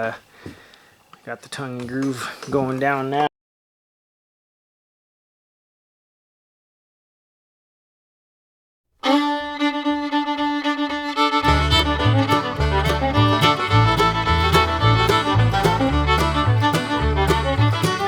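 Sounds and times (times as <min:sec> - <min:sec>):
fiddle music: 0:09.0 - 0:18.0
low bass line: 0:11.3 - 0:18.0
steady beat: 0:11.4 - 0:18.0.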